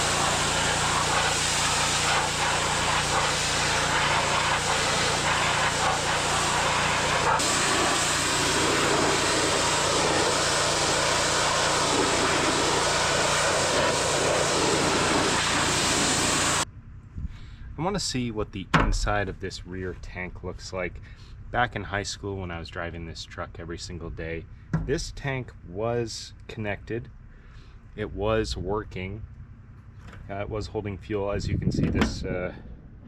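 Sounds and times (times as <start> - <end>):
water spray hissing: 0.0 - 16.6
pressure washer engine drone: 0.0 - 17.0.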